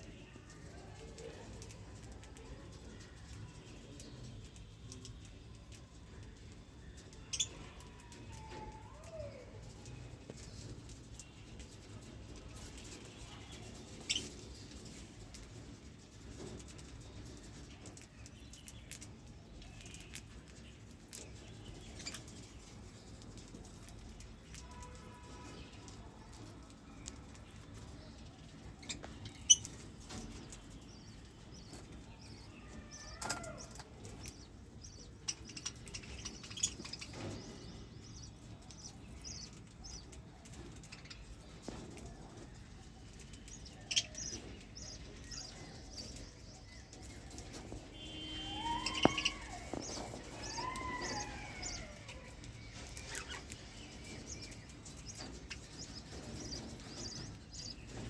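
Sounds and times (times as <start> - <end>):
budgerigars chirping: 48.0 - 52.0.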